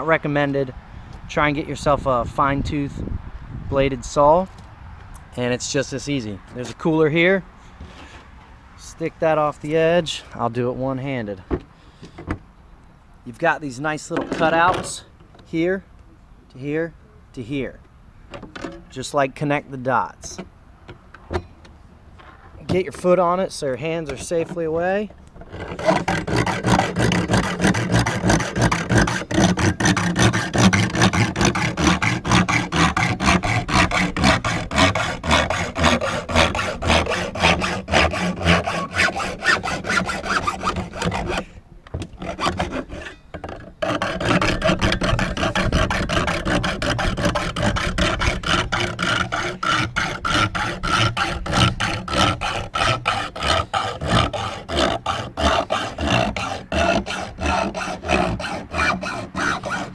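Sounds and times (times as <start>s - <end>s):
hacksaw rasping strokes: 14.2s - 15.0s, 23.8s - 59.9s.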